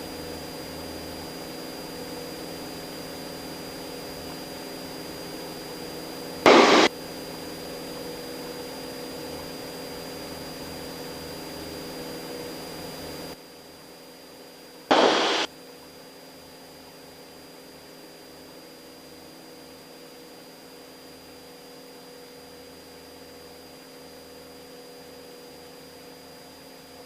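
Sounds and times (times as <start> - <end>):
loud bursts of static: 6.5 - 6.9, 14.9 - 15.5.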